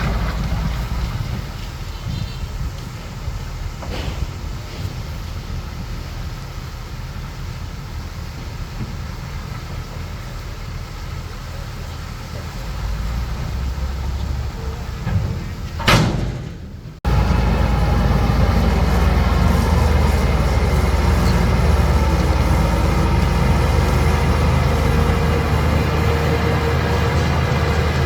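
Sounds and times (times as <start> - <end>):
heavy diesel engine running: 0.0 - 28.0.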